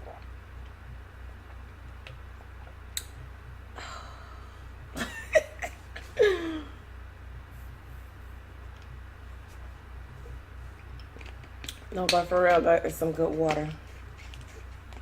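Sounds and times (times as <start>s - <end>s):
person gulping water: 0.0s - 3.1s
person sighing ahh: 6.2s - 6.8s.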